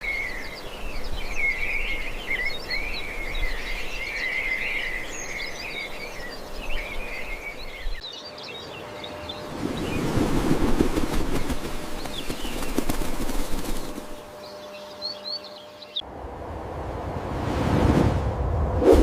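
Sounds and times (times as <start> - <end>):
birds chirping and warbling: 0.0 - 16.1.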